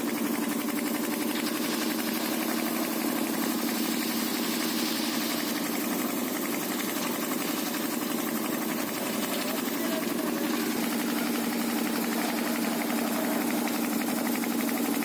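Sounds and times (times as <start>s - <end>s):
concrete mixer engine running: 0.0s - 15.0s.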